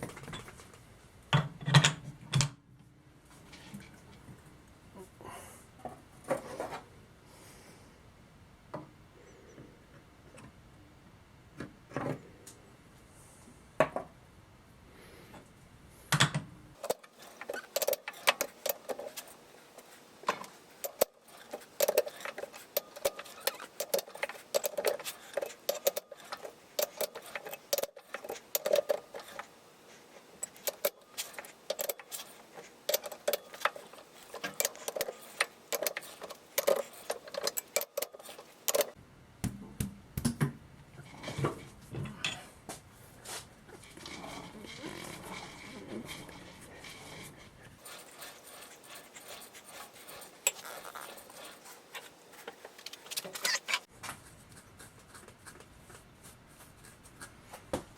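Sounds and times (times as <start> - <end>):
metal parts and tools clinking: 16.8 - 19.4, 20.3 - 29.5, 30.4 - 39.0, 43.8 - 53.9.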